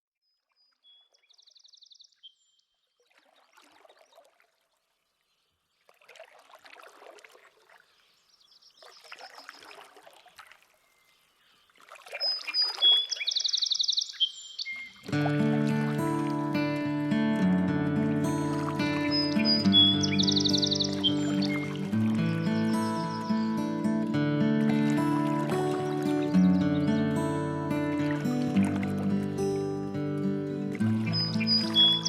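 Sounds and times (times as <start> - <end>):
water splashing and trickling: 2.4 - 32.0
bird trilling: 12.2 - 15.0, 18.9 - 23.7, 31.0 - 32.0.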